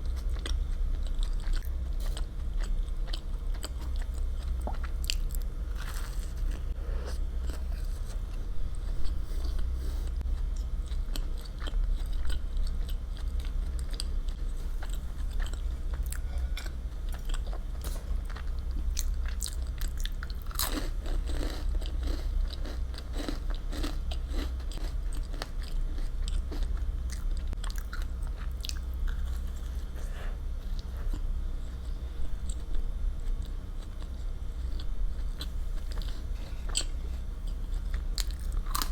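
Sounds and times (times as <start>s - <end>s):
steady low hum: 0.0s - 38.9s
biting and chewing: 32.5s - 38.9s.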